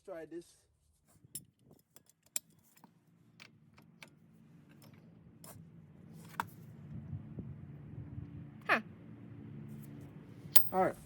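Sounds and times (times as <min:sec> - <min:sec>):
low steady hum: 0:02.4 - 0:11.0.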